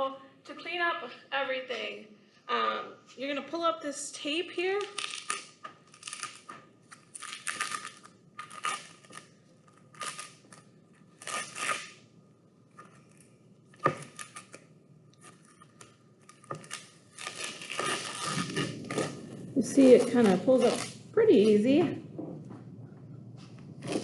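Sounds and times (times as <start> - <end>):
tape ripping off screen: 4.8 - 12.0, 13.8 - 21.1, 23.8 - 24.0.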